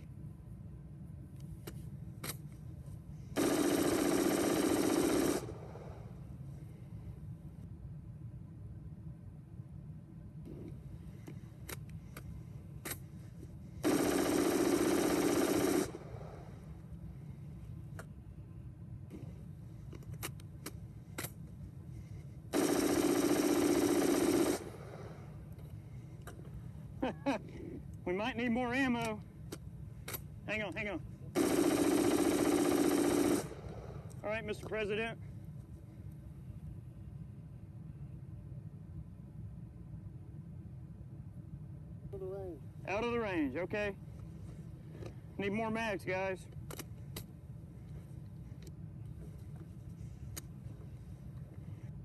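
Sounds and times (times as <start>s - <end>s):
rifle firing rapid burst: 3.4s - 5.9s, 13.8s - 16.5s, 22.5s - 25.2s, 31.4s - 34.0s.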